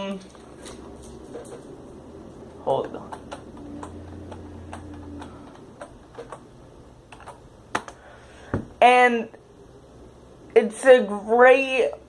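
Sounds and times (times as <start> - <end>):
low steady hum: 0.0 - 12.0
keyboard keys clicking: 2.9 - 6.5.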